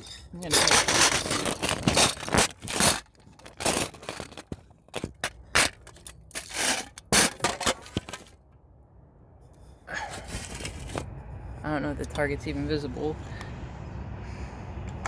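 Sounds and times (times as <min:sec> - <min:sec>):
crunching and scraping: 0:00.0 - 0:08.6, 0:09.6 - 0:11.1.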